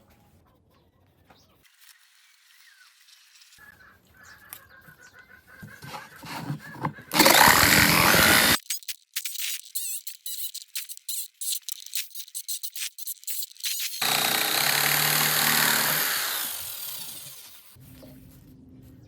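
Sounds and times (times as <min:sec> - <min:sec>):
power tool running: 0:05.9 - 0:17.8.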